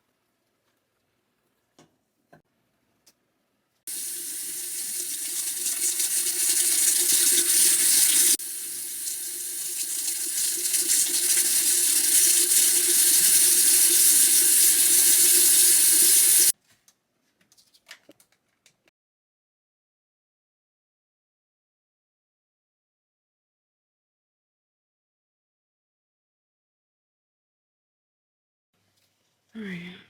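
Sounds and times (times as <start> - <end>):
water running from a tap: 3.9 - 16.5.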